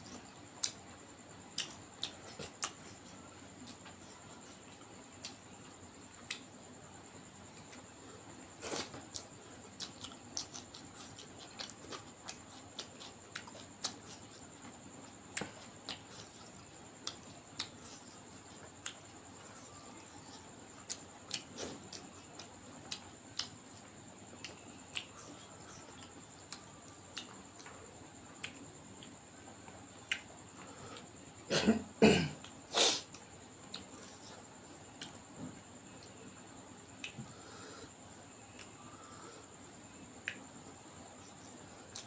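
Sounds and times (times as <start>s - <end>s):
person chewing and smacking: 0.1s - 0.8s, 1.5s - 6.6s, 8.6s - 31.1s, 32.4s - 35.3s, 37.0s - 37.4s, 38.5s - 38.8s, 40.2s - 42.0s.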